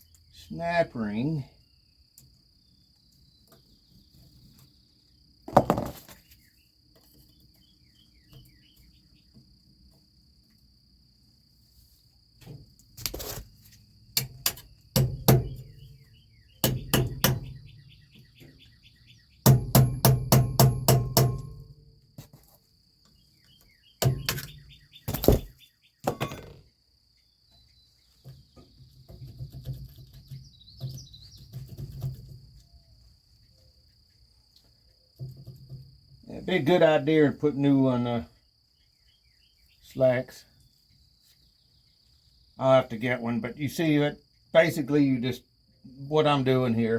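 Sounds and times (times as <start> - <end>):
crickets chirping: 0.0 - 46.9
hand tools knocking on metal: 19.5 - 21.6.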